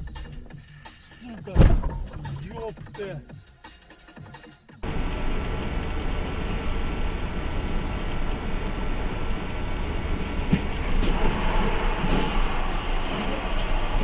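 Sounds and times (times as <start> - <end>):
vehicle rumble: 1.5 - 2.8, 4.8 - 14.0.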